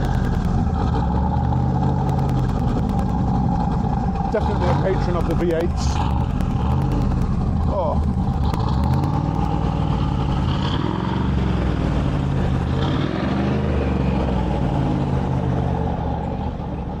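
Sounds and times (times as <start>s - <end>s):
car engine exhaust note: 0.0s - 17.0s.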